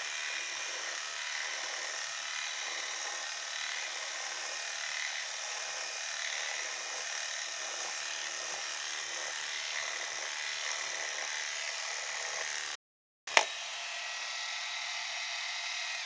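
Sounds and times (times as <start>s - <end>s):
router spindle milling wood: 0.0s - 16.0s
sharp click: 13.3s - 13.5s.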